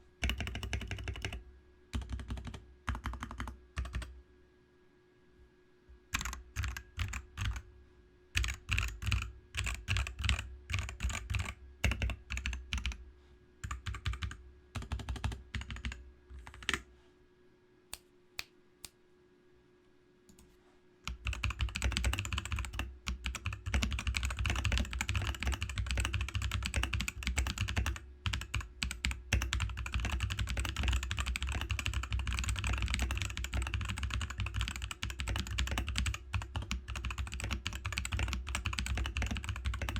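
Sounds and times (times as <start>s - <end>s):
mechanical keyboard typing: 0.2s - 1.4s, 2.0s - 4.1s, 6.1s - 7.6s, 8.4s - 13.0s, 13.6s - 16.8s, 21.1s - 39.9s.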